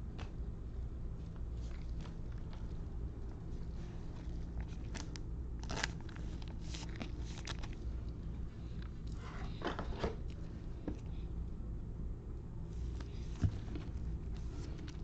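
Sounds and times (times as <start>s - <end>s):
cards and foil packs crinkling: 4.0s - 7.9s.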